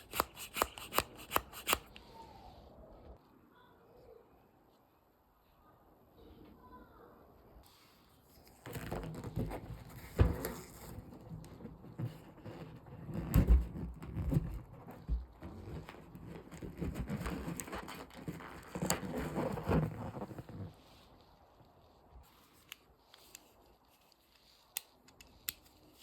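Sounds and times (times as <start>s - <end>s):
balloons rubbing and crackling: 0.0s - 2.0s, 7.7s - 24.7s.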